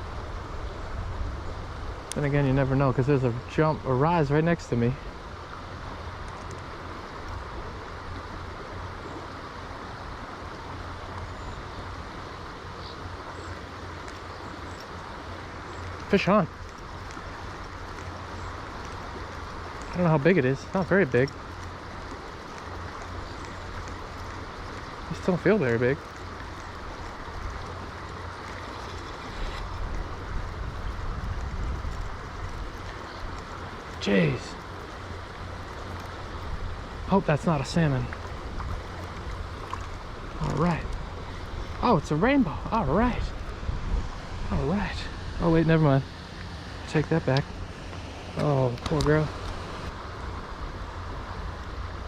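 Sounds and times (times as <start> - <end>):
river water rushing: 0.0 - 52.0
wind buffeting microphone: 14.0 - 52.0.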